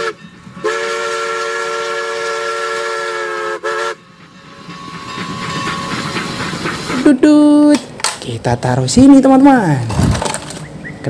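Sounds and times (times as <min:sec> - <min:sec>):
train horn blast: 0:00.0 - 0:04.1.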